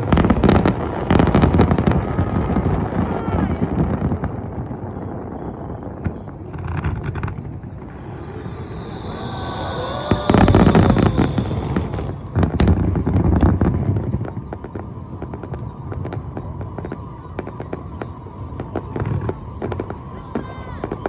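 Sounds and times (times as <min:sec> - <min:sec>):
firework crackling: 0:00.0 - 0:21.0
firework shells booming: 0:05.8 - 0:21.0
high whistling tone: 0:07.6 - 0:21.0.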